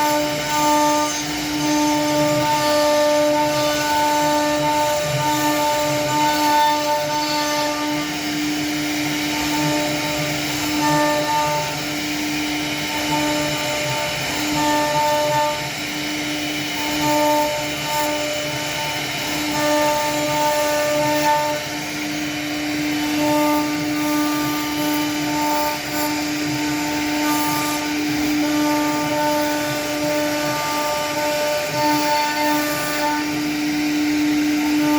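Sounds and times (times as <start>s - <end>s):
cnc router spindle whine: 0.0s - 34.9s.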